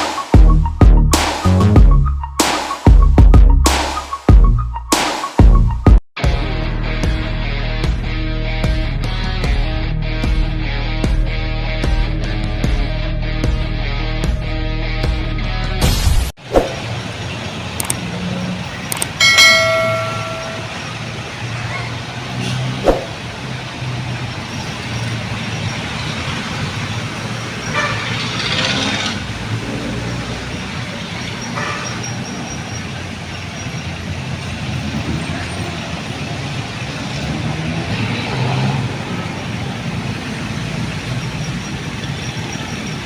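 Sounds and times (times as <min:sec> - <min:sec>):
engine hum of passing vehicles: 0:16.4 - 0:43.0
sharp click: 0:17.8 - 0:18.0.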